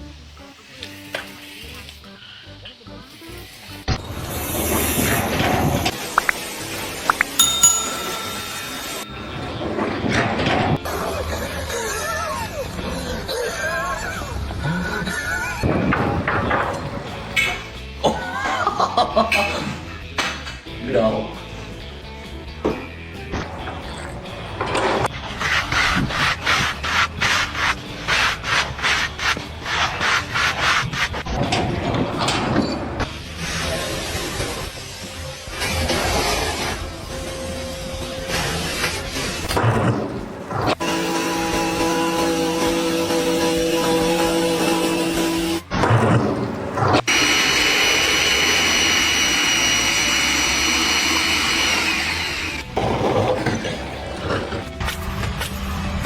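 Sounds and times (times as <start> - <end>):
music: 0.0 - 4.0, 7.4 - 9.8, 40.8 - 45.7, 52.1 - 56.0.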